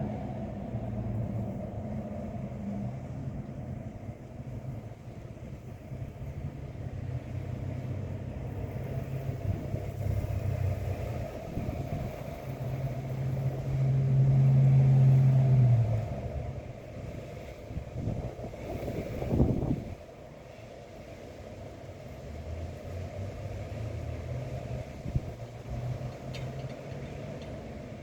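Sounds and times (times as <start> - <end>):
faint wind: 0.0 - 28.0
vehicle passing by: 6.9 - 20.0.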